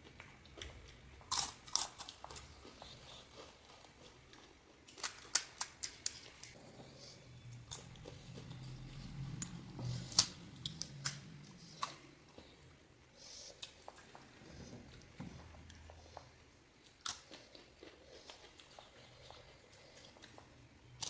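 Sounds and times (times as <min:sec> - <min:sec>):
crunchy chewing: 0:00.0 - 0:21.0
low hum: 0:06.6 - 0:13.1.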